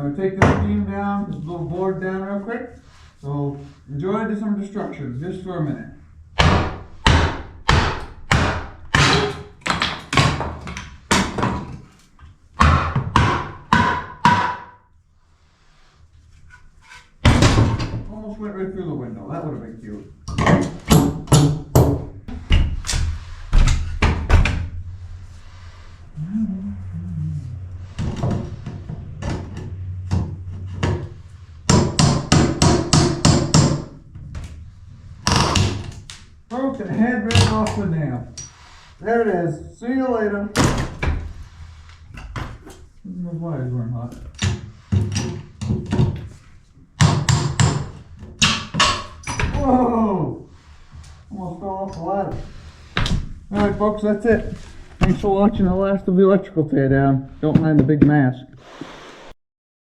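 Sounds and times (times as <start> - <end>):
hammer striking wooden board: 6.4 - 11.7, 12.6 - 14.8, 20.4 - 22.6, 29.2 - 34.0, 47.0 - 49.2
hard blows on wooden board: 20.9 - 36.3.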